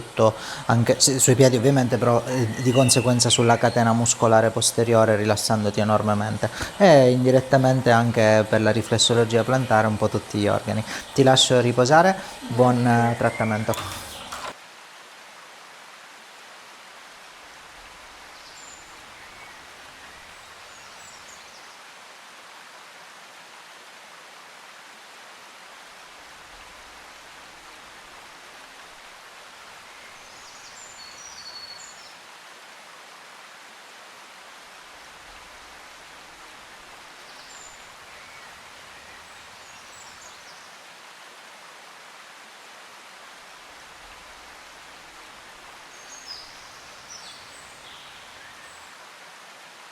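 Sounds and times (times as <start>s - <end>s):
flowing water: 0.0s - 15.2s, 16.2s - 22.3s, 25.4s - 49.9s
high bird chirps: 0.4s - 4.6s, 8.5s - 14.6s.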